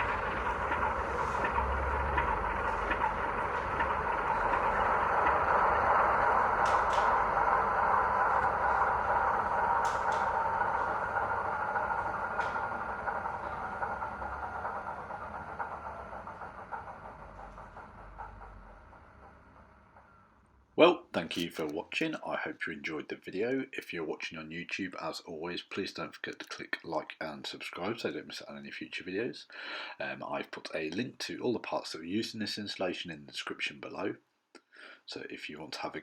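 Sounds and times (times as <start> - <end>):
model diesel locomotive engine running: 0.0 - 22.9.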